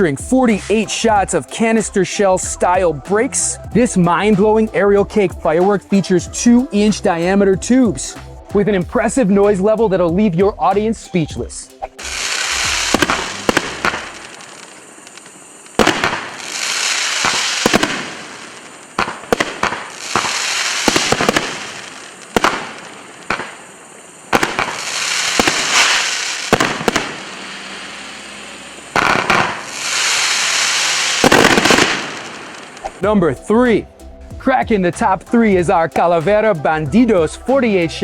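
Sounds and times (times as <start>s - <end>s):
firework hissing: 11.7s - 33.0s
firework shell bangs: 12.9s - 14.2s, 15.8s - 16.5s, 17.2s - 18.2s, 19.0s - 21.7s, 22.3s - 23.6s, 24.3s - 27.3s, 29.0s - 30.2s, 31.2s - 32.2s.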